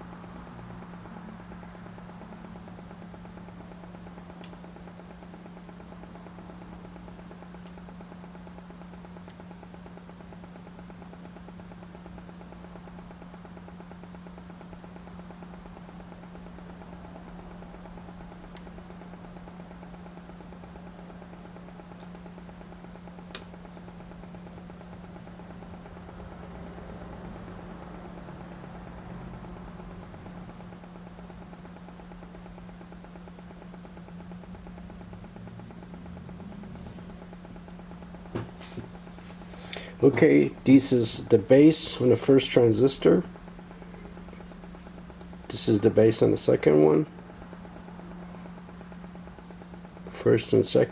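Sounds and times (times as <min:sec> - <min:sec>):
low electrical hum: 0:00.0 - 0:50.9.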